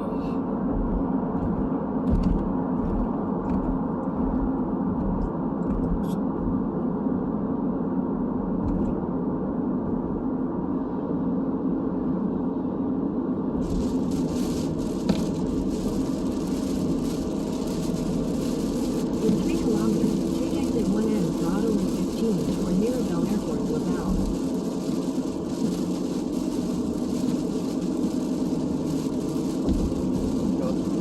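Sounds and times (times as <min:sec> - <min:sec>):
car road and engine rumble: 0:00.0 - 0:31.0.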